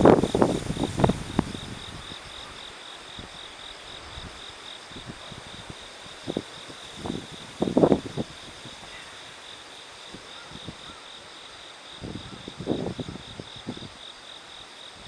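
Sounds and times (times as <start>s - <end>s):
wind buffeting microphone: 0.0s - 2.6s, 3.2s - 9.0s, 12.0s - 14.0s
crickets chirping: 0.0s - 15.0s.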